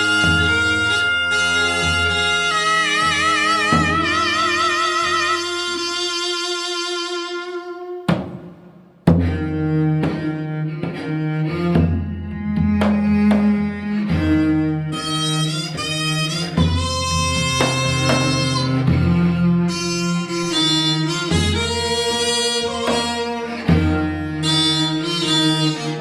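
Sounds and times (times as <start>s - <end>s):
double-reed wind high notes: 0.0s - 8.1s, 14.9s - 26.0s.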